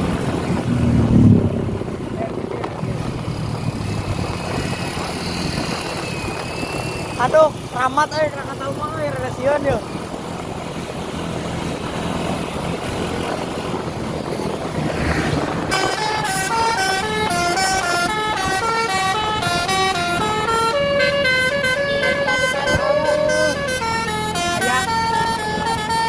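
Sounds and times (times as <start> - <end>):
bus rumbling: 0.0 - 26.0
multi-tone bus horn tune: 15.4 - 26.0.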